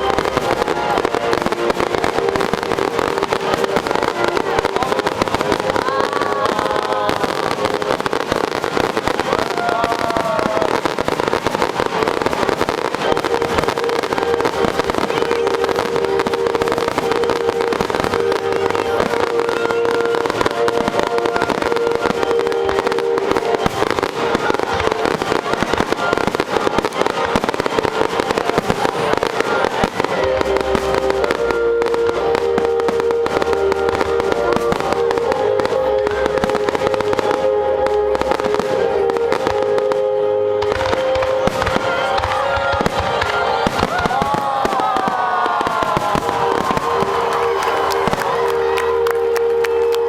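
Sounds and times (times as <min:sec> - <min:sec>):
fireworks crackling and popping: 0:00.0 - 0:50.0
music with long held notes: 0:00.0 - 0:50.0.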